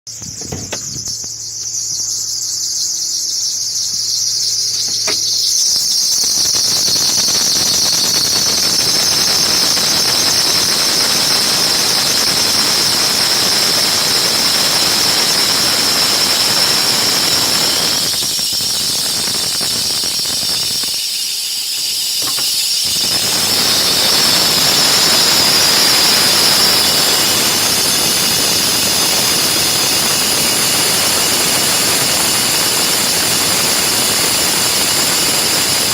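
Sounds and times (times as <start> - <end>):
high-pitched whistling squeal: 0.1 - 35.9.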